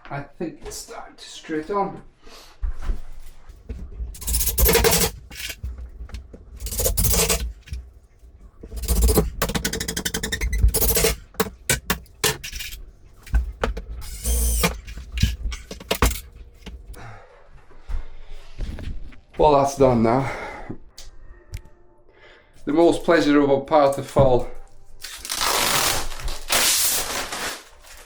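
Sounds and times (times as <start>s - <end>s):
knocks and clicks: 3.6s - 17.0s
power driver driving screws: 4.2s - 7.9s, 8.6s - 16.9s.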